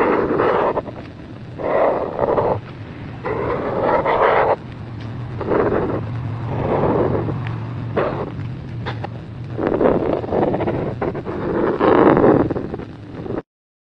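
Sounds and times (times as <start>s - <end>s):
marker scratching on paper: 0.0s - 0.9s, 1.6s - 2.6s, 3.2s - 4.6s, 5.4s - 7.3s, 8.0s - 8.3s, 8.9s - 12.8s.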